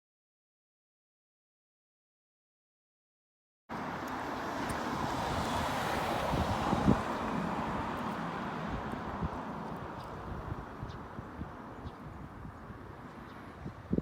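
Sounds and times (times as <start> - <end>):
wind and road noise: 3.7 - 14.0.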